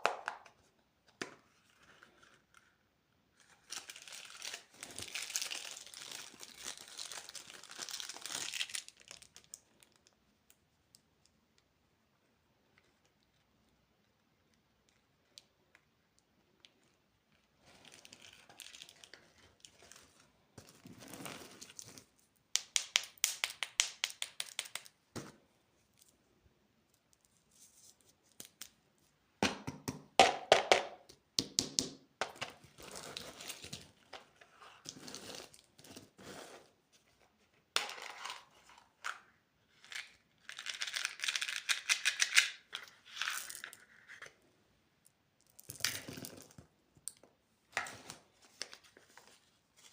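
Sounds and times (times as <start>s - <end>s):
plastic wrappers crinkling and tearing: 3.6s - 10.2s.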